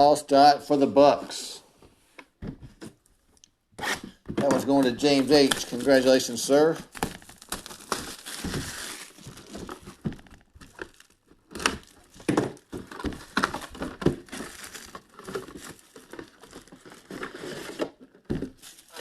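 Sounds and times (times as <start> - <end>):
packaging crinkling and tearing: 4.7 - 17.8, 18.5 - 19.0.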